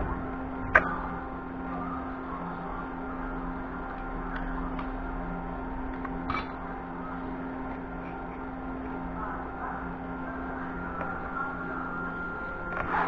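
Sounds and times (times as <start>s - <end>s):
low mechanical hum: 0.0s - 13.0s.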